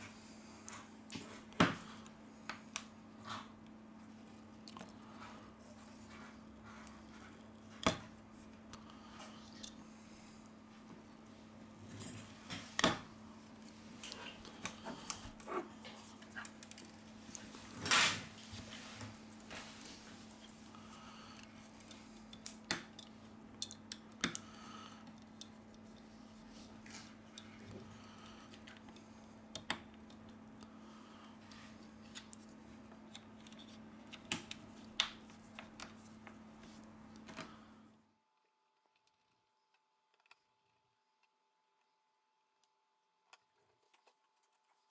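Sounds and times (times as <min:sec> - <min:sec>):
faint steady hum: 0:00.0 - 0:44.9
light clicks and taps of tools: 0:21.3 - 0:27.9.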